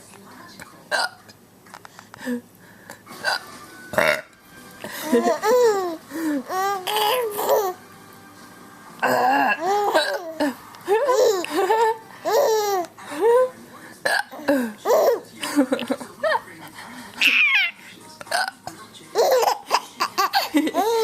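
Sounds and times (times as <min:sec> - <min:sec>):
adult hiccup-burp: 0:03.2 - 0:04.3
baby laughing in high squeals: 0:17.2 - 0:17.8.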